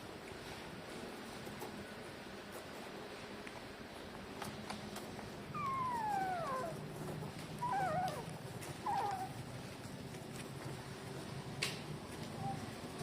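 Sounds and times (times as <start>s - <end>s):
puppy whining: 5.4s - 9.9s, 12.1s - 13.0s.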